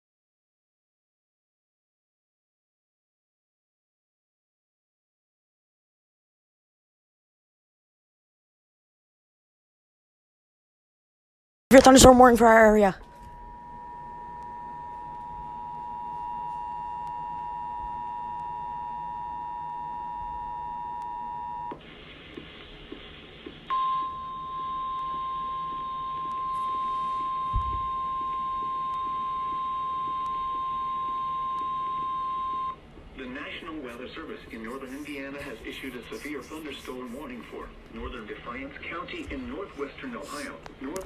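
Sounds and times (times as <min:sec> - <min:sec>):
steady warning tone: 0:11.7 - 0:21.8, 0:23.7 - 0:32.8
two-tone alarm: 0:13.0 - 0:21.8, 0:23.7 - 0:32.8
radio static: 0:33.2 - 0:41.0.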